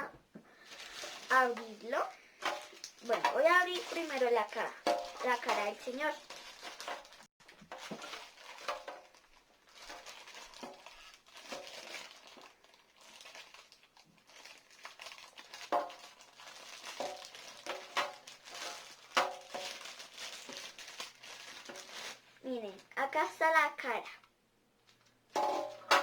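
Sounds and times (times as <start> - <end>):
plastic packaging crinkling: 0.5 - 23.4.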